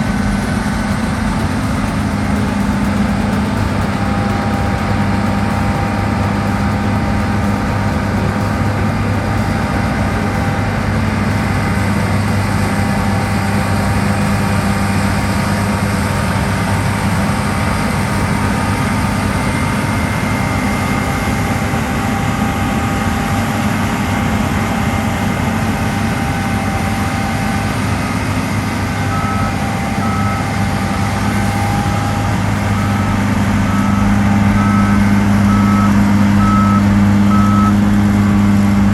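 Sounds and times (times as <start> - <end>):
diesel engine running: 0.0 - 38.9
reversing alarm beeps: 28.7 - 38.9.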